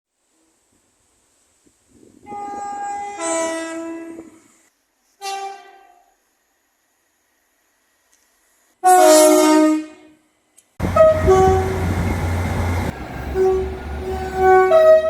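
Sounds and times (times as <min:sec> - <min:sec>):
train horn blast: 0:02.3 - 0:04.4, 0:05.2 - 0:06.1, 0:08.8 - 0:10.2, 0:10.8 - 0:15.0
two-tone train horn: 0:02.3 - 0:04.4, 0:05.2 - 0:06.1, 0:08.8 - 0:10.2, 0:10.8 - 0:15.0
steady low rumble: 0:10.8 - 0:14.4.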